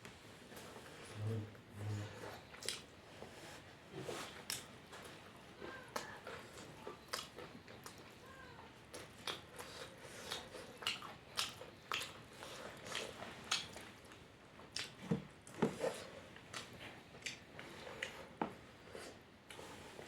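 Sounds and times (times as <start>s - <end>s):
person chewing with mouth clicks: 2.2s - 2.9s, 4.2s - 8.2s, 8.9s - 18.3s.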